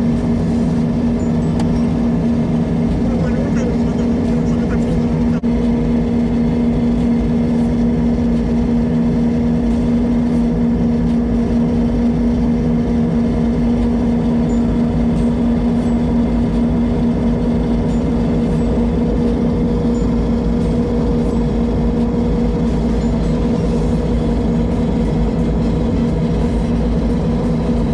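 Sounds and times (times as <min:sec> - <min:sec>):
heavy machinery engine droning: 0:00.2 - 0:05.4.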